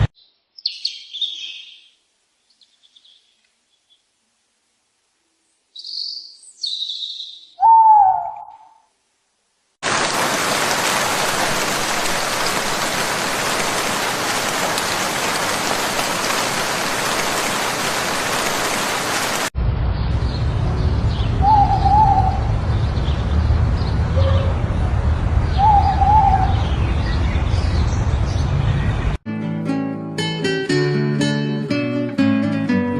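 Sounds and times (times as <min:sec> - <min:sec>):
high bird chirps: 0:00.2 - 0:04.0, 0:05.7 - 0:08.8
rain-like hiss: 0:01.8 - 0:05.8, 0:08.9 - 0:19.5
lower bird call: 0:05.8 - 0:08.9, 0:21.1 - 0:22.5, 0:25.5 - 0:26.8.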